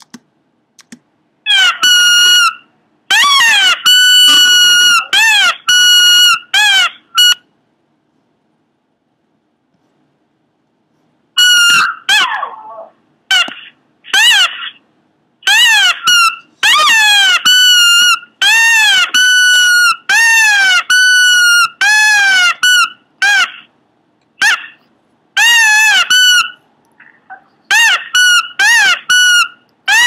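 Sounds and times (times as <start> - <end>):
dog yelping: 1.5 - 7.4, 11.4 - 14.8, 24.4 - 24.8.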